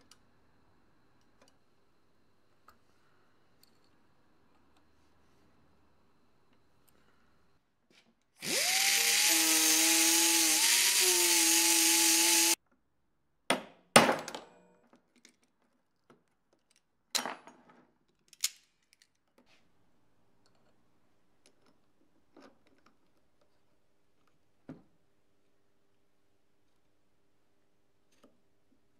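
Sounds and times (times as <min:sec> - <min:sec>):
power tool motor whining: 0:08.4 - 0:12.6.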